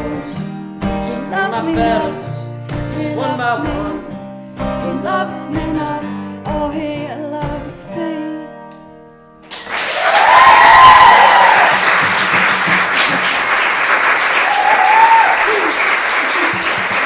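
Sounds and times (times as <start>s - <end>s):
audience applause: 9.5s - 17.0s
person whooping: 9.9s - 11.9s, 14.3s - 17.0s.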